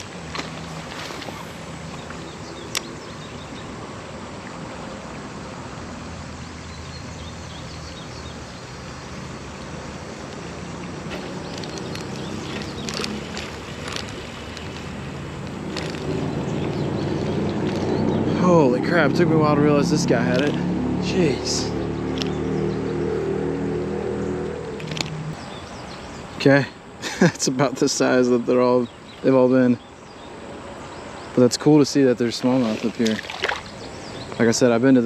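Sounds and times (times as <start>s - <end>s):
creek water flowing: 0.0s - 23.7s, 30.1s - 34.8s
road traffic: 0.0s - 35.0s
sharp clicks: 22.1s - 22.4s.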